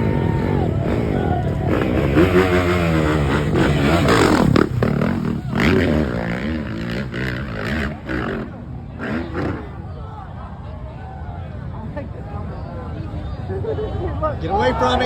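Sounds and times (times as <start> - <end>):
dirt bike engine revving: 0.0 - 9.8.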